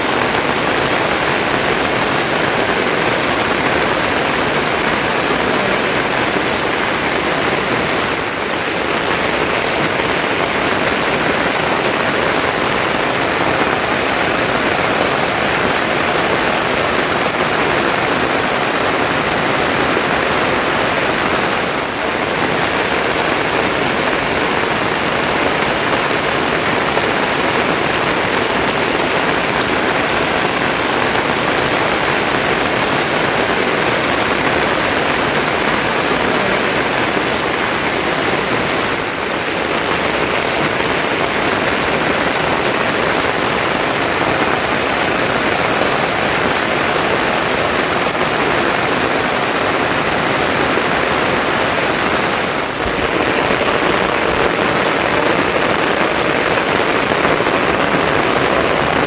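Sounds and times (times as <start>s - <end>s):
heavy rain falling: 0.0s - 59.0s.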